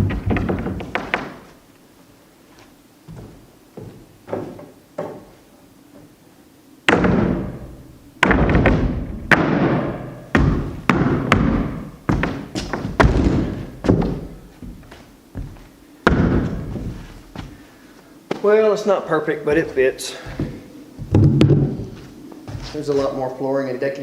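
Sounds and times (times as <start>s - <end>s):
heavy thuds pounding wood: 0.0s - 1.5s, 6.9s - 17.5s, 20.3s - 22.6s.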